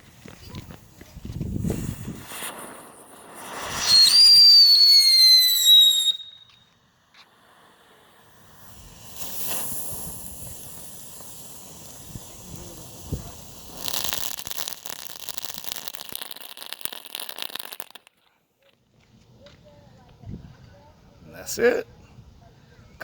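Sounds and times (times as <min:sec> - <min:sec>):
firework rushing hiss: 0:00.0 - 0:18.1
firework crackling pops: 0:00.0 - 0:18.2.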